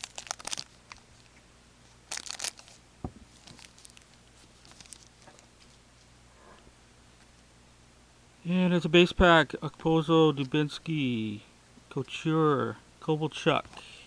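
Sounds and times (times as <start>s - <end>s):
foil pack tearing: 0.0s - 1.0s, 2.1s - 5.2s
cards ticking and rustling: 0.0s - 1.4s, 2.1s - 5.8s.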